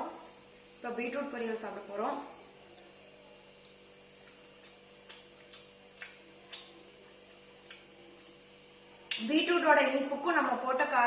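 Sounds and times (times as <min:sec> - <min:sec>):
faint steady hum: 0:00.0 - 0:11.0
soft eating clicks: 0:02.5 - 0:09.5.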